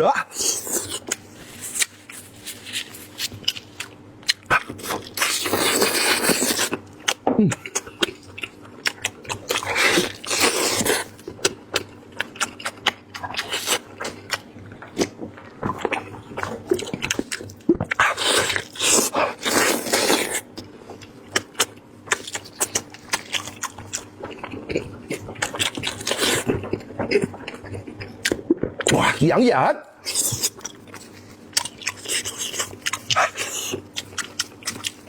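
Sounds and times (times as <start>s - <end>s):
wet chewing mouth clicks: 30.1s - 35.0s.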